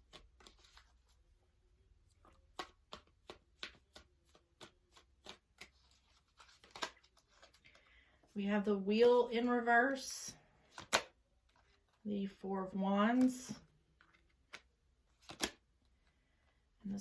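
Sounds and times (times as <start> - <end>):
cards being shuffled: 0.0 - 1.3, 2.0 - 8.1, 10.6 - 12.0, 13.2 - 16.2.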